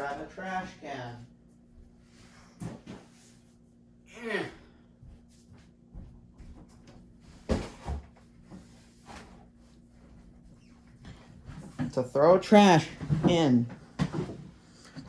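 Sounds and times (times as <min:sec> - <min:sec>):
trash can bumps and knocks: 0:07.4 - 0:08.2, 0:13.0 - 0:14.5.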